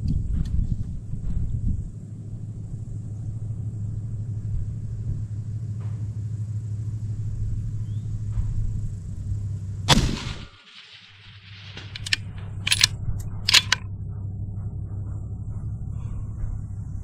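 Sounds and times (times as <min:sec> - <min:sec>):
low rumble: 0:00.0 - 0:17.0
rifle shot: 0:09.9 - 0:12.9, 0:13.5 - 0:13.8
rifle bolt clicking: 0:11.5 - 0:12.9, 0:13.5 - 0:13.8.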